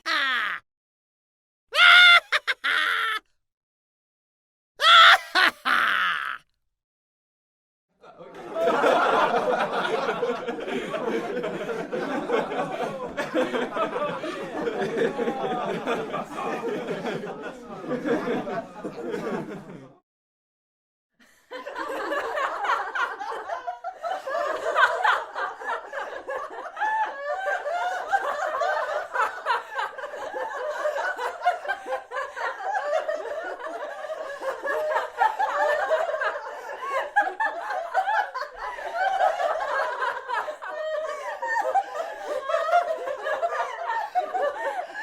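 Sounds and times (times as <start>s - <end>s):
group of people laughing: 0.0s - 0.6s, 1.8s - 3.3s, 4.8s - 6.5s, 8.0s - 20.0s, 21.2s - 45.0s.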